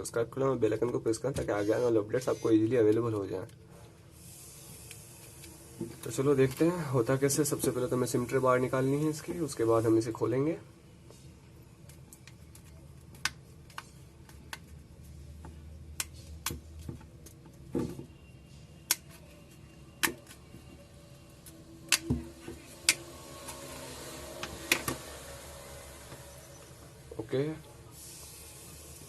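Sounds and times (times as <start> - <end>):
faint hiss: 3.7 - 11.5, 23.0 - 29.0.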